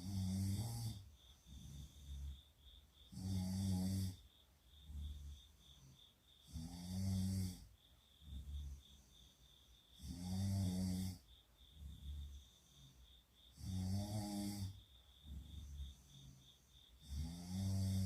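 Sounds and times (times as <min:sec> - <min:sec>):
girls snoring: 0:00.0 - 0:02.4, 0:03.1 - 0:05.5, 0:10.0 - 0:12.4, 0:13.5 - 0:18.0.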